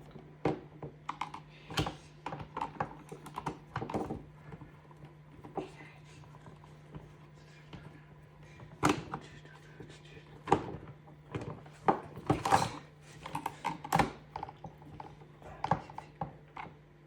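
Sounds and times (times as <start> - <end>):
plastic fan parts clicking and knocking: 0.4 - 4.2.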